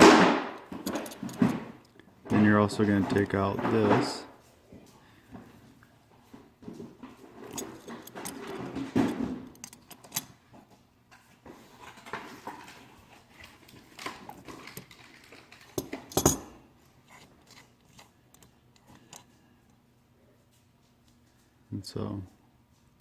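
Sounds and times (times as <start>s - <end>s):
metal tools clinking and scraping: 0.8s - 4.2s, 7.2s - 10.4s, 12.1s - 19.3s.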